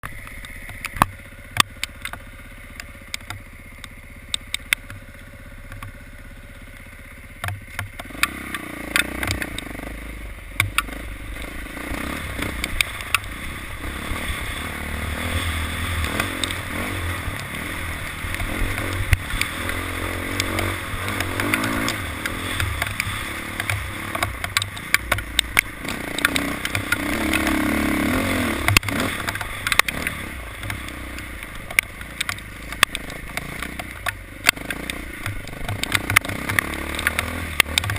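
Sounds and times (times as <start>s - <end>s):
sharp clicks and ticks: 0.0s - 6.0s, 6.7s - 37.9s
motorcycle engine rumble: 0.0s - 37.9s.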